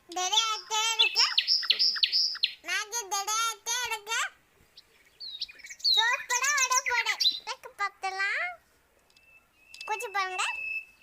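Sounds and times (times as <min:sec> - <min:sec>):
bird warbling: 0:00.1 - 0:02.7.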